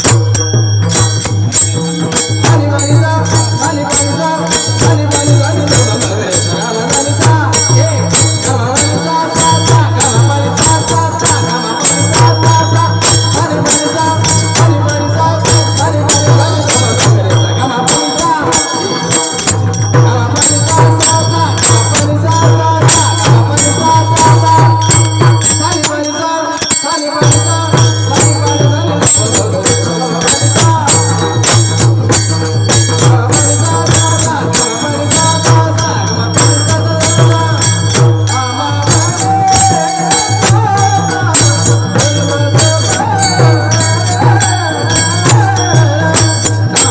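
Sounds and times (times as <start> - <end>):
fast hand drumming: 0.0 - 46.9
jingling metal percussion: 0.0 - 46.9.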